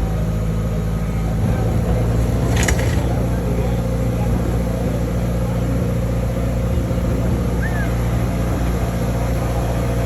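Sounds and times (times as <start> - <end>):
vehicle engine running: 0.0 - 10.0.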